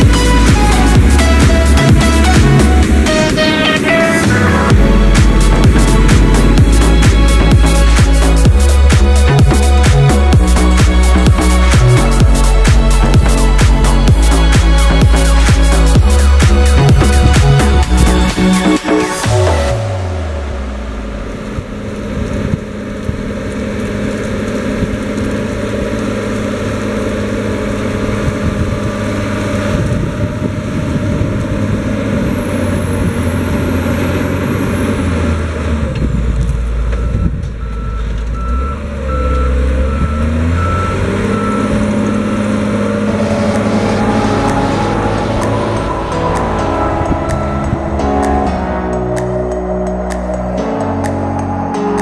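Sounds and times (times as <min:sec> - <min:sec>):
tractor engine running: 0:00.0 - 0:52.0
warning beeper beeps: 0:37.0 - 0:48.2.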